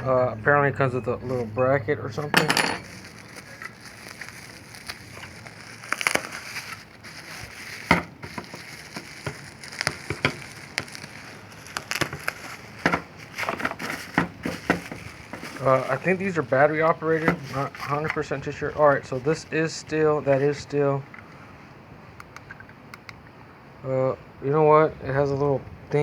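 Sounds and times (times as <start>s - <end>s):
packaging rustling: 2.3s - 19.4s.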